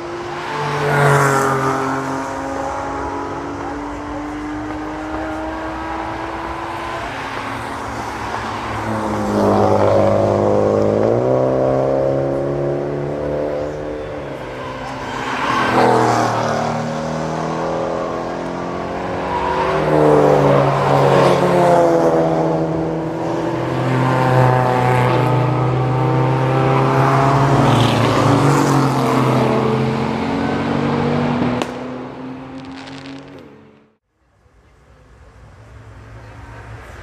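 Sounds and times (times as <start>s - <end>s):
race cars passing: 0.0s - 37.0s.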